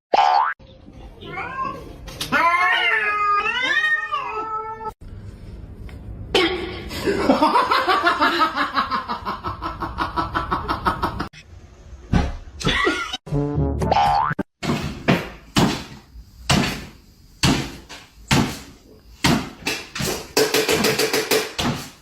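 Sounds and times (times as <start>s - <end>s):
cat yowling: 1.2s - 4.9s.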